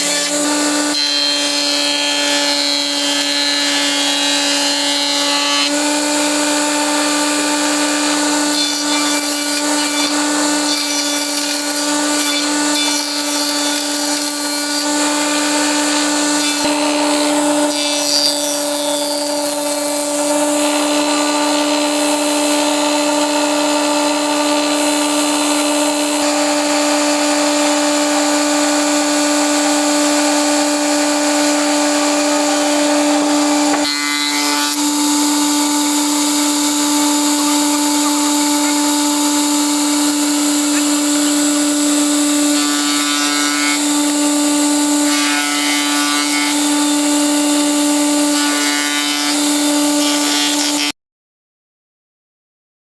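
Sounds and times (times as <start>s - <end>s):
power tool high-pitched whine: 19.4s - 50.8s.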